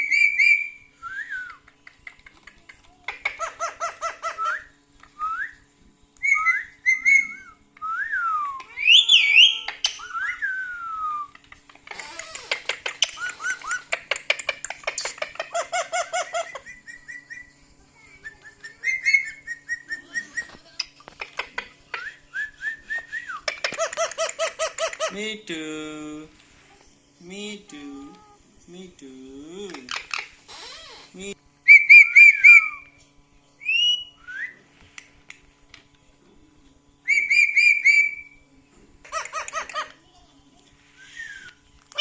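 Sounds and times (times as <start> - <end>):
parrot whistling glides: 6.2 - 11.3, 16.0 - 20.6, 31.6 - 33.0, 37.0 - 38.4, 41.0 - 41.5.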